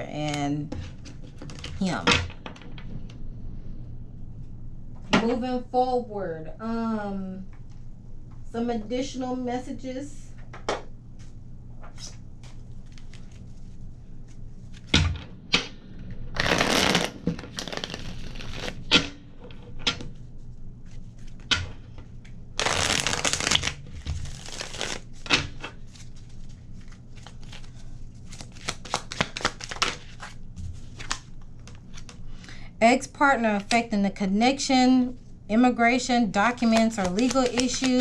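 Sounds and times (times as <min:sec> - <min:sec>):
cards riffle shuffling: 0:16.4 - 0:18.8, 0:22.6 - 0:32.2, 0:36.6 - 0:38.0
cards snapping and tapping: 0:36.6 - 0:38.0.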